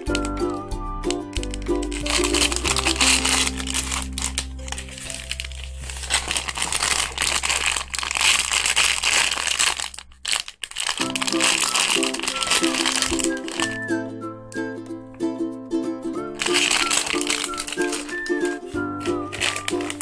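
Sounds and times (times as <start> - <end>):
plastic crinkling: 0.0 - 0.5, 1.1 - 14.0, 16.3 - 20.0
background music with low held notes: 0.0 - 7.0, 11.1 - 20.0.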